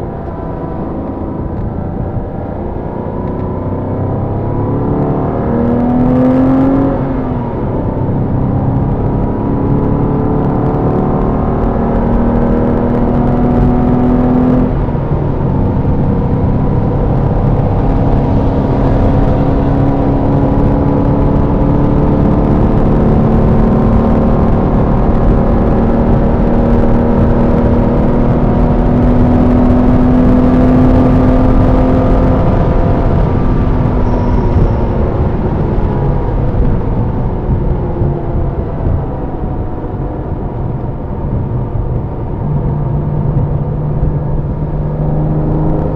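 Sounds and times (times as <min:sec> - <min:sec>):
engine revving through gears: 0:00.0 - 0:15.2
road noise: 0:00.0 - 0:45.9.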